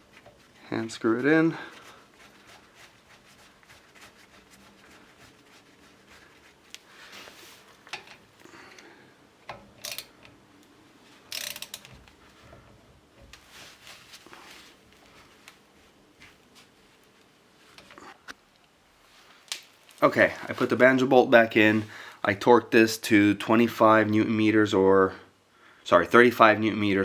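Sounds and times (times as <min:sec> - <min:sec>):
ratchet wrench clicking: 0:09.8 - 0:10.1, 0:11.3 - 0:11.9.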